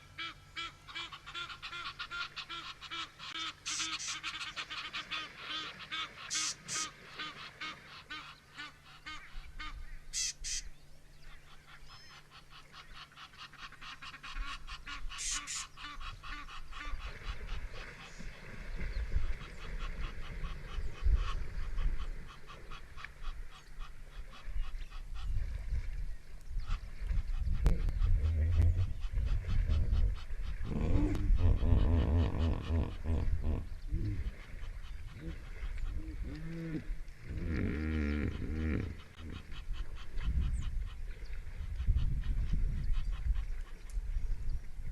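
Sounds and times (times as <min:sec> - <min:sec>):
birds calling rapidly: 0:00.2 - 0:25.4
low rumble: 0:27.0 - 0:34.4.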